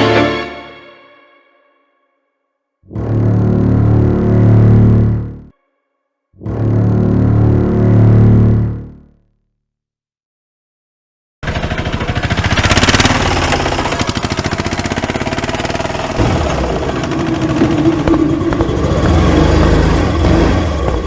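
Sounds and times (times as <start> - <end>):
engine running with fast pulse: 11.4 - 21.0.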